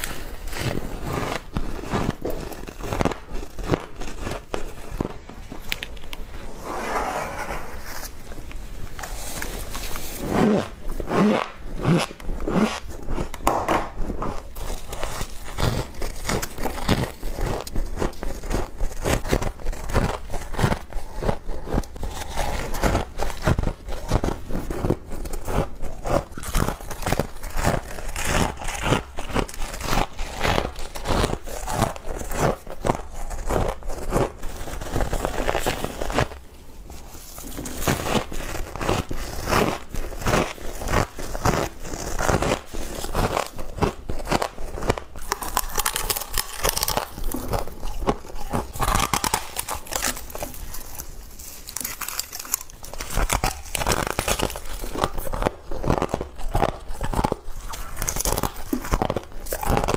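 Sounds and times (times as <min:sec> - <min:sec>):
crunchy chewing of frost: 0:00.0 - 0:06.5, 0:07.9 - 0:59.9.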